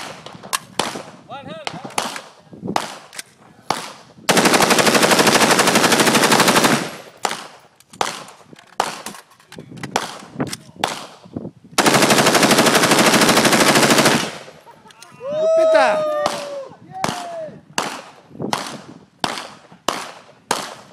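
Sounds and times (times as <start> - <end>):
rifle single shots: 0.0 - 9.1, 9.9 - 14.6, 17.8 - 20.9
automatic rifle bursts: 11.8 - 14.6.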